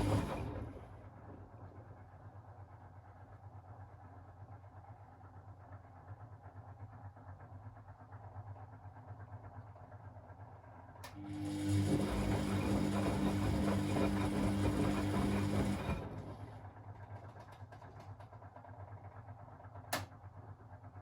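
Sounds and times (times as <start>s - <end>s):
washing machine rushing noise: 0.0s - 2.2s, 11.1s - 18.9s.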